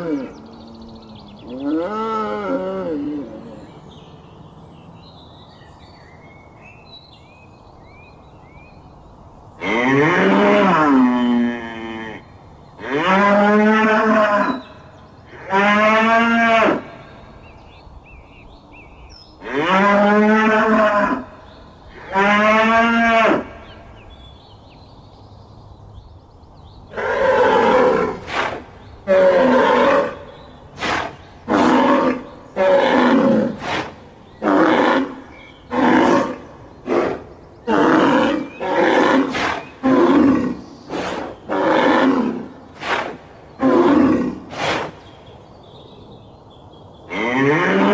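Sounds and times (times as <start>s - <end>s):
animal roaring calls: 0.0s - 3.7s, 26.9s - 45.0s, 47.1s - 47.9s.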